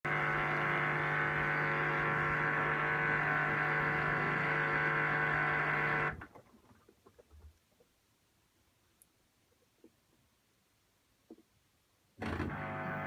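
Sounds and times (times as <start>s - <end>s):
washing machine buzzing: 0.1s - 6.2s, 12.2s - 13.0s.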